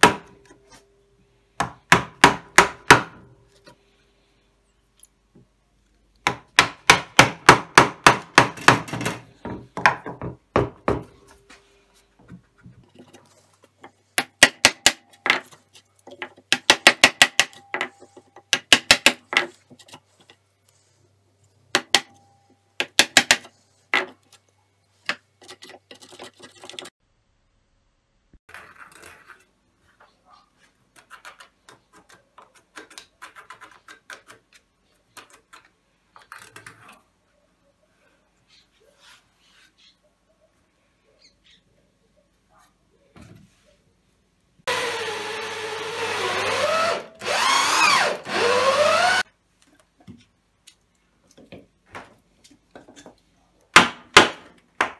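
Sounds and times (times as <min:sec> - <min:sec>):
wood scraping and handling: 0:11.0 - 0:14.1.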